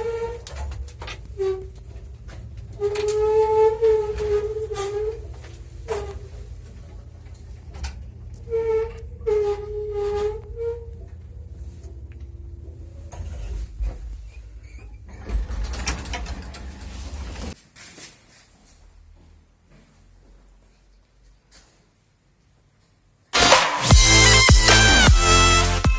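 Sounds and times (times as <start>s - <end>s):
steady low hum: 0.0s - 17.6s
knocks and clatter: 13.0s - 17.6s.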